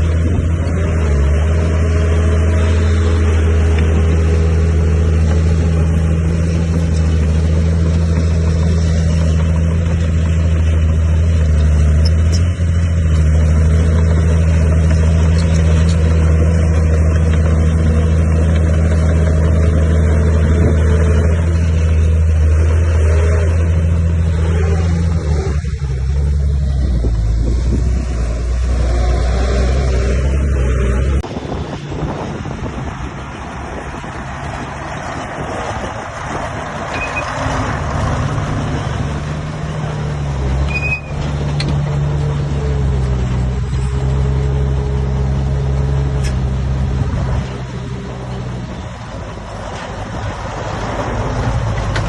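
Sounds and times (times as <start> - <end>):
heavy diesel engine running: 0.0 - 52.0.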